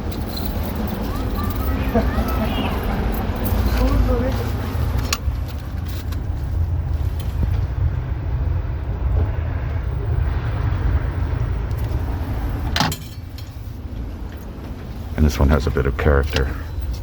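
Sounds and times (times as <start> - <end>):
city street traffic rumble: 0.0 - 17.0.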